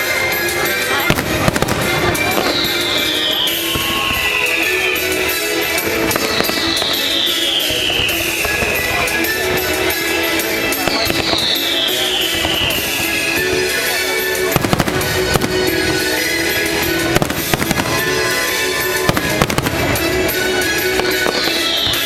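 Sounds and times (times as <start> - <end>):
fireworks bangs and crackles: 0.0 - 22.0
show music over outdoor speakers: 0.0 - 22.0
falling firework whistle: 0.9 - 22.0.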